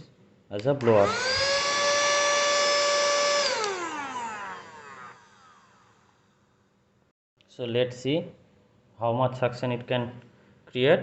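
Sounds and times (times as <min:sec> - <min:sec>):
small vacuum motor whining: 0:00.8 - 0:06.4.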